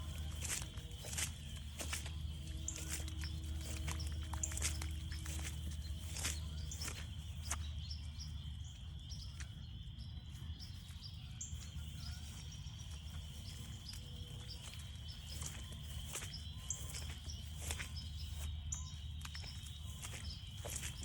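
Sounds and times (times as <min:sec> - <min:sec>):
faint footsteps on trail: 0:00.0 - 0:21.0
frogs peeping: 0:00.0 - 0:21.0
frogs trilling: 0:00.0 - 0:21.0.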